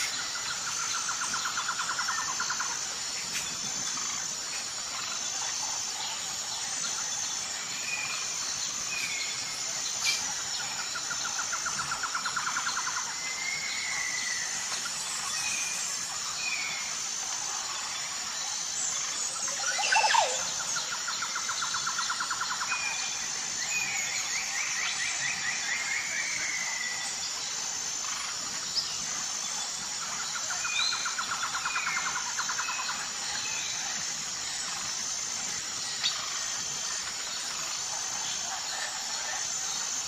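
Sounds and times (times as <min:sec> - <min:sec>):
birds trilling and chirping: 0:00.0 - 0:40.0
high-pitched insect drone: 0:00.0 - 0:40.0.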